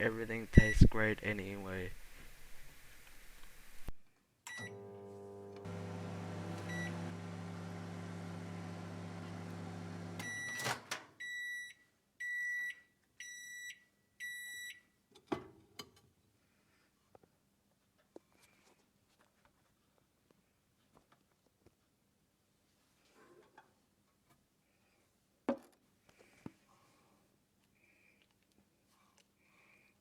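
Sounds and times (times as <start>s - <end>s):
microwave beeps: 0.6s - 0.9s, 4.5s - 14.8s
microwave oven humming: 4.5s - 10.7s
microwave click: 4.5s - 10.9s.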